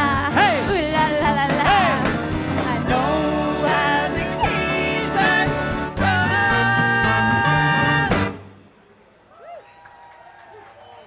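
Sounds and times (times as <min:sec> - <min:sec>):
person singing: 0:00.0 - 0:08.3
live band music: 0:00.0 - 0:08.6.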